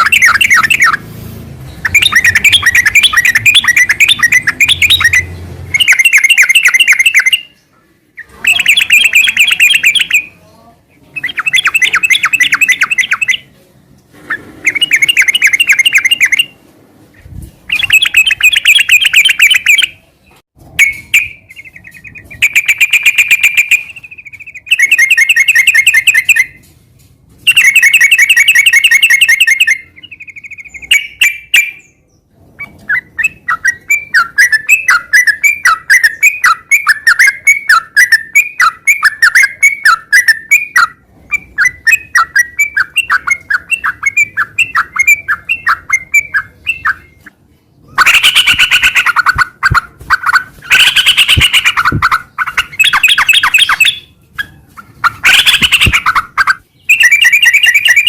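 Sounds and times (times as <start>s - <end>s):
bulbul singing fast chattering notes: 0.0s - 7.6s, 8.2s - 10.4s, 11.1s - 13.5s, 14.6s - 16.6s, 17.2s - 20.0s, 20.8s - 26.6s, 27.5s - 31.9s, 32.8s - 58.0s.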